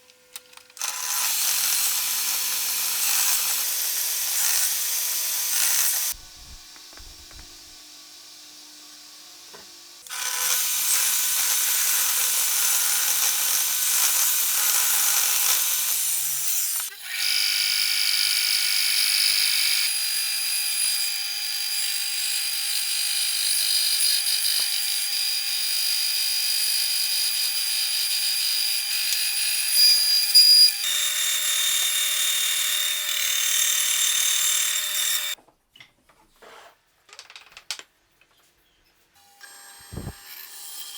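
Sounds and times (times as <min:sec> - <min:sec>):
electric power tool on wood: 0:00.0 - 0:35.4, 0:39.2 - 0:40.9.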